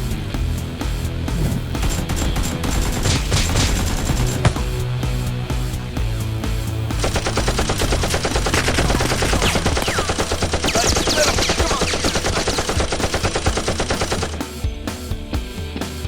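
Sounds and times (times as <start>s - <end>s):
background music: 0.0s - 16.0s
machine-gun fire: 1.8s - 4.7s, 7.0s - 14.4s.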